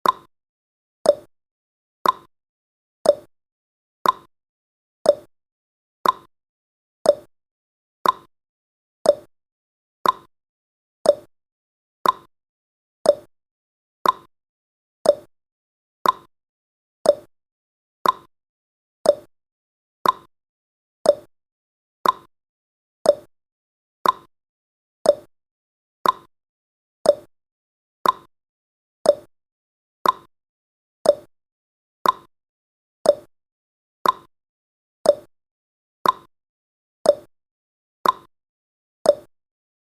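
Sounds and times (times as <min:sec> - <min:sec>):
clock ticking: 0:02.0 - 0:02.3, 0:04.0 - 0:04.3, 0:06.0 - 0:06.3, 0:08.0 - 0:08.3, 0:10.0 - 0:10.3, 0:12.0 - 0:12.3, 0:14.0 - 0:14.3, 0:15.1 - 0:15.3, 0:16.0 - 0:16.3, 0:17.1 - 0:17.3, 0:18.0 - 0:18.3, 0:19.1 - 0:19.3, 0:20.0 - 0:20.3, 0:21.1 - 0:21.3, 0:22.0 - 0:22.3, 0:24.0 - 0:24.3, 0:26.0 - 0:26.3, 0:28.0 - 0:28.3, 0:29.1 - 0:29.3, 0:30.0 - 0:30.3, 0:31.1 - 0:31.3, 0:32.0 - 0:32.3, 0:33.1 - 0:33.3, 0:34.0 - 0:34.3, 0:35.1 - 0:35.3, 0:36.0 - 0:36.3, 0:38.0 - 0:38.3, 0:39.1 - 0:39.3.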